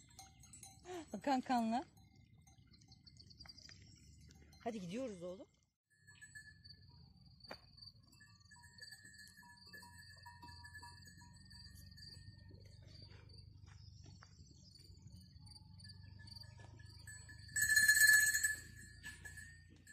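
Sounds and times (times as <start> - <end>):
small bell jingling: 0.0 - 3.4, 5.9 - 7.0, 7.9 - 13.2, 15.3 - 19.9
crickets chirping: 5.9 - 19.6.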